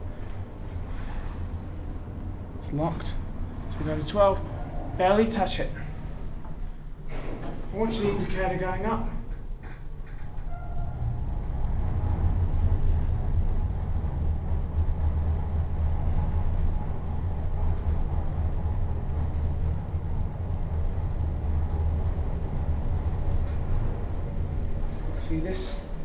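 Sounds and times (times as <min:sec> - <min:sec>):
lift car rumbling: 0:00.0 - 0:26.0.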